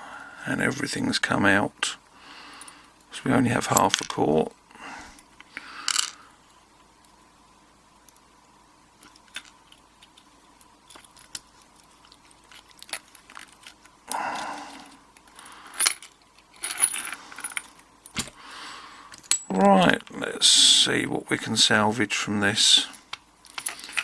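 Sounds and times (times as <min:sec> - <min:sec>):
metal lock parts clattering: 0:09.0 - 0:13.9, 0:15.2 - 0:18.4, 0:19.1 - 0:19.5, 0:23.4 - 0:24.0.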